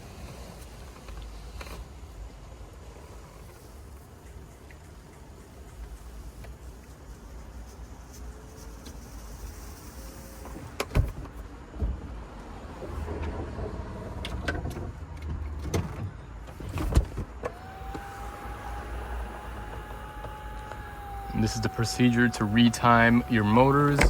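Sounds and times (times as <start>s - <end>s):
electric motors running: 17.4s - 24.0s
steady motor whine: 17.4s - 24.0s.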